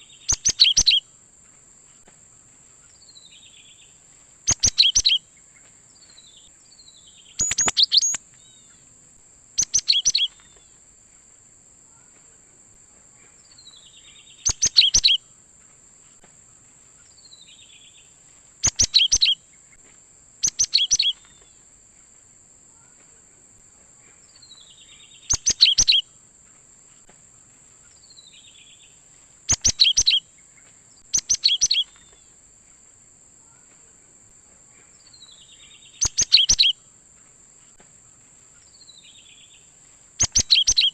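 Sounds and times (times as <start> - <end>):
bird singing sharp notes: 0.2 - 1.0, 7.2 - 8.2, 9.6 - 10.4, 20.4 - 21.3, 29.5 - 30.2, 31.2 - 32.1, 36.0 - 36.7, 40.2 - 40.9
high-pitched hiss: 1.8 - 12.8.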